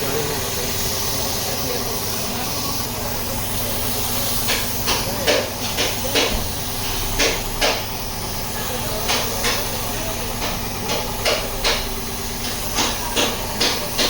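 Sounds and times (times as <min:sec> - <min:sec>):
hammer on sheet metal: 0:04.4 - 0:08.0, 0:08.9 - 0:14.0.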